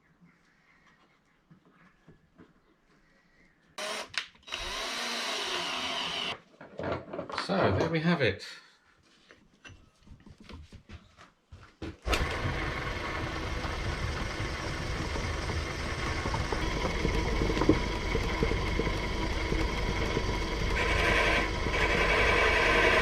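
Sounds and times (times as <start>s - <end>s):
lathe running: 3.8s - 6.4s, 12.0s - 23.0s.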